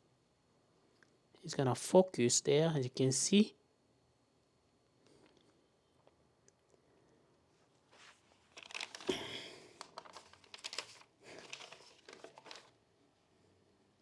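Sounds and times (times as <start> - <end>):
crinkling rustling handling noise: 7.5 - 12.8.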